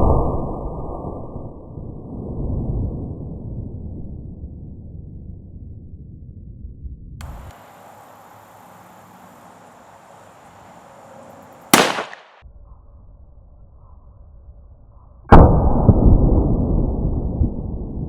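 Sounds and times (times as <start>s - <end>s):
revolver shot: 11.6s - 12.4s
deep rumbling boom: 15.3s - 18.0s.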